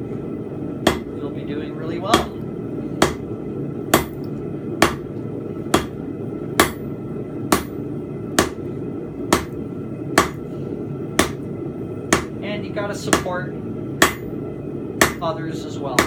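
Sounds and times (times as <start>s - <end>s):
steady low hum: 0.0s - 16.0s
hammer ringing on anvil: 14.0s - 14.3s.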